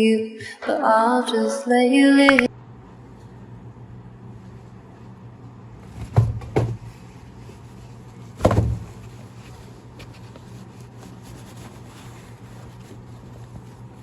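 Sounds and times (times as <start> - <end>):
steady low hum: 1.9 - 14.0
dull thumps: 5.9 - 7.0, 8.4 - 9.2.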